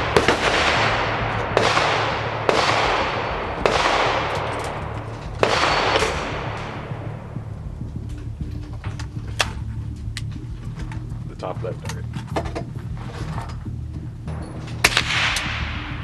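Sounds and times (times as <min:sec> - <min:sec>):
loud sharp bangs with rumbling tail: 0:00.0 - 0:08.5, 0:14.8 - 0:16.0
steady low hum: 0:00.0 - 0:16.0.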